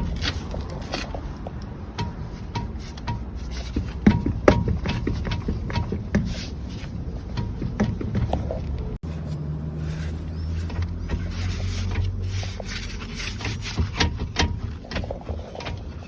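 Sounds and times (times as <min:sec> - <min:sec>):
car suspension knocking: 0:00.0 - 0:09.0, 0:10.6 - 0:16.0.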